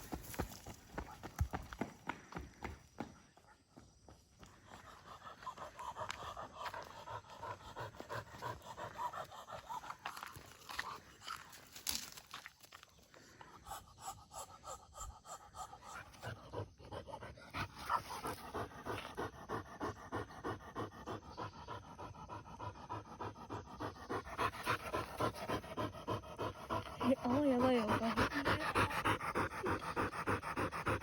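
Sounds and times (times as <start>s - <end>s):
dog panting hard: 4.4s - 10.9s, 13.6s - 31.0s.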